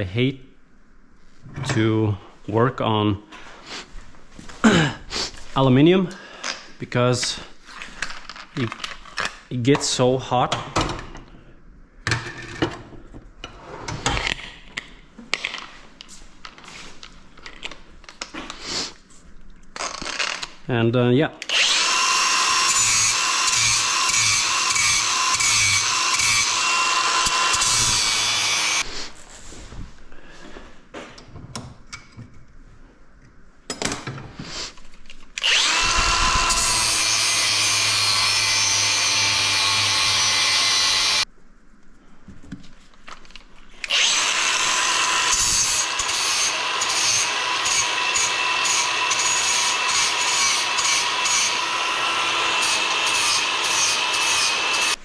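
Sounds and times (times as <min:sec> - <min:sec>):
power grinder whining: 0:21.5 - 0:28.8, 0:35.4 - 0:41.2, 0:43.8 - 0:55.0.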